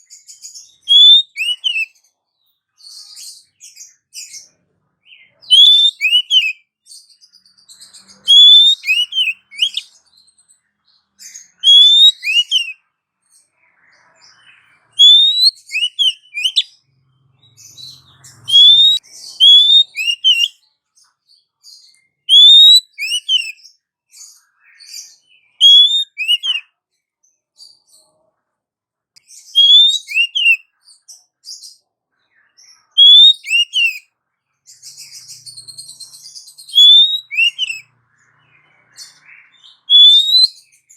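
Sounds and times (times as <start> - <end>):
bird whistled call: 0.7 - 2.0, 5.1 - 6.7, 8.0 - 10.0, 11.2 - 12.8, 14.4 - 16.8, 17.7 - 20.6, 22.0 - 26.7, 29.4 - 30.7, 32.6 - 34.1, 34.8 - 40.9.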